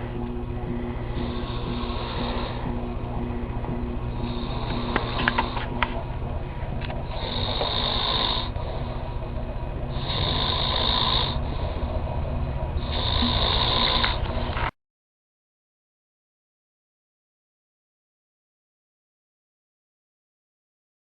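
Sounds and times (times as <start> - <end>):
steady low hum: 0.0 - 14.8
man snoring: 0.7 - 2.7, 4.1 - 5.7, 7.0 - 8.9, 9.9 - 11.6, 12.8 - 14.2.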